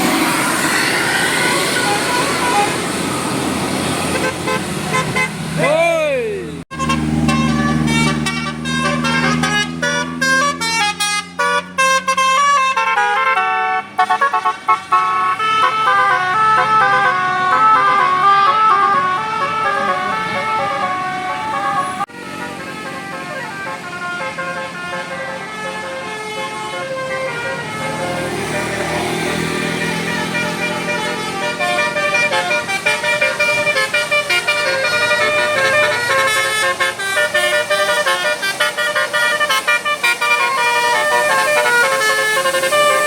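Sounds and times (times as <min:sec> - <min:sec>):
multi-tone bus air horn tune: 0:00.0 - 0:03.3, 0:03.9 - 0:05.4, 0:06.7 - 0:43.0.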